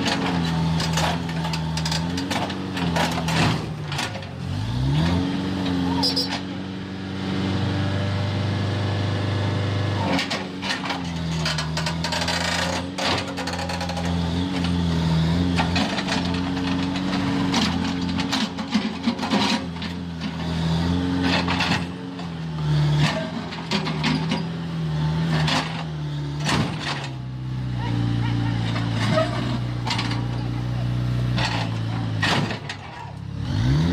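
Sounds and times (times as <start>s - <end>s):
knocks and clanks of metal and stones: 0.0s - 4.4s, 10.1s - 24.6s, 25.2s - 27.2s, 28.6s - 30.5s, 31.3s - 33.2s
backhoe diesel engine under load: 0.0s - 33.9s.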